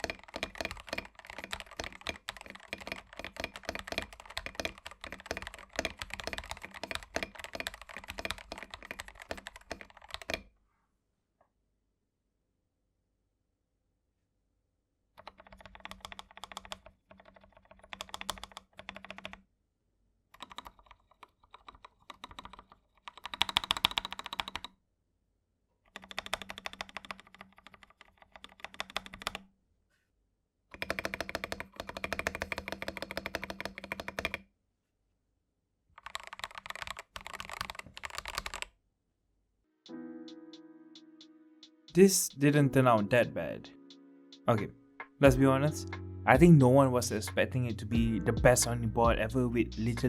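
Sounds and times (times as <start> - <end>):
mechanical keyboard typing: 0.0 - 10.4, 15.2 - 19.4, 20.4 - 24.7, 25.9 - 29.4, 30.7 - 34.4, 36.0 - 38.7.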